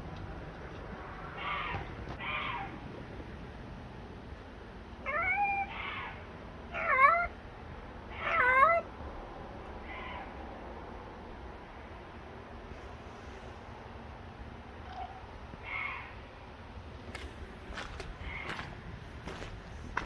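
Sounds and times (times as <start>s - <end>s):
cat meowing: 5.0s - 7.3s, 8.2s - 8.9s.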